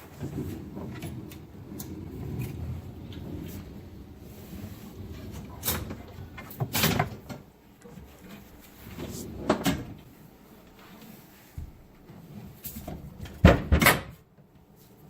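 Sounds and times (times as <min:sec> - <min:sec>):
dishwasher knocking and clunking: 0:05.3 - 0:07.5, 0:09.4 - 0:10.0, 0:12.9 - 0:14.2.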